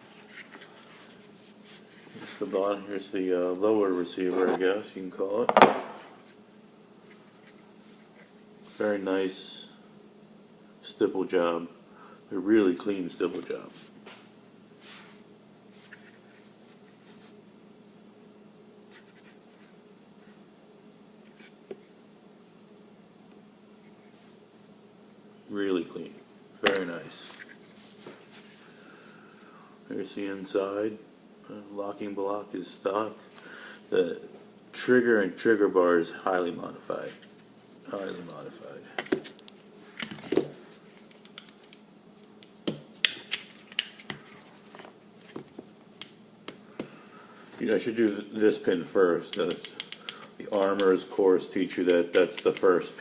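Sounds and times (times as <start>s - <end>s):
low steady hum: 0.0s - 53.0s.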